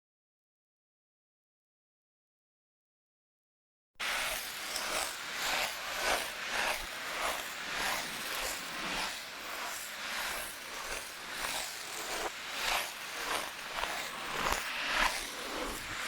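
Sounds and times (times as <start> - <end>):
ice skate blades scraping on ice: 4.0 - 16.0.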